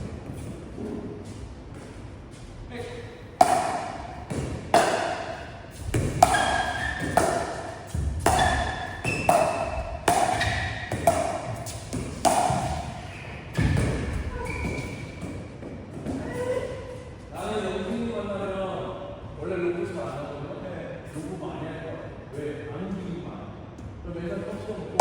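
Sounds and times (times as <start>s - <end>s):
paddles hitting plastic ball: 3.4s - 13.0s.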